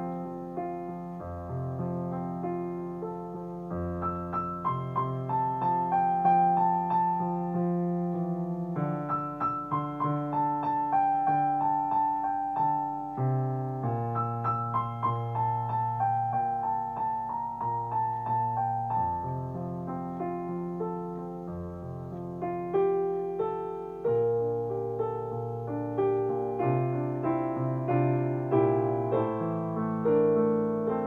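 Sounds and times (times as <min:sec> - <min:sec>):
relaxing piano music: 0:00.0 - 0:31.0.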